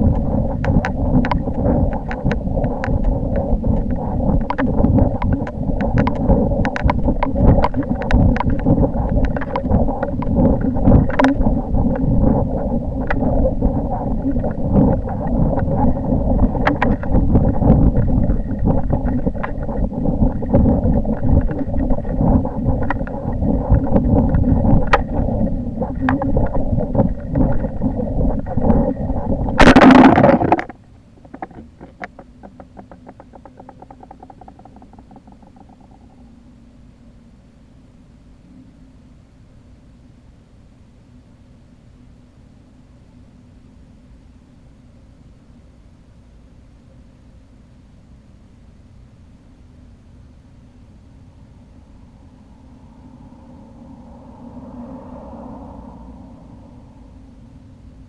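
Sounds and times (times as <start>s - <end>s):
wind buffeting microphone: 0.0s - 30.7s
scattered clicks: 0.0s - 36.2s.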